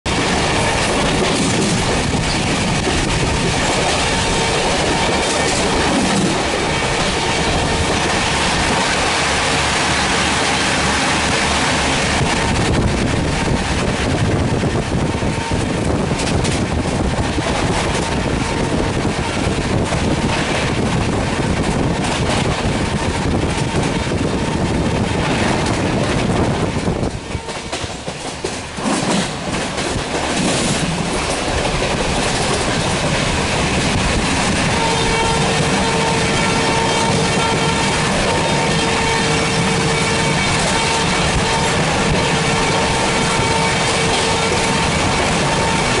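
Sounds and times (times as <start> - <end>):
train wheels clattering: 0.1 - 46.0
locomotive horn: 27.0 - 27.9, 34.2 - 46.0.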